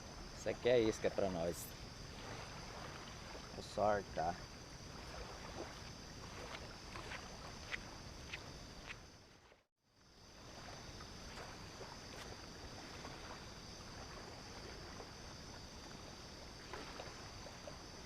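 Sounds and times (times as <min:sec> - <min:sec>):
surf washing: 0:00.0 - 0:07.7
wind: 0:00.0 - 0:18.0.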